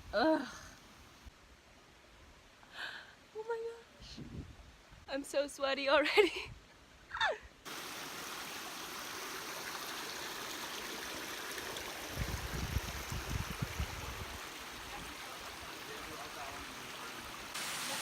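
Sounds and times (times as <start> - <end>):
water rushing: 7.7 - 18.0.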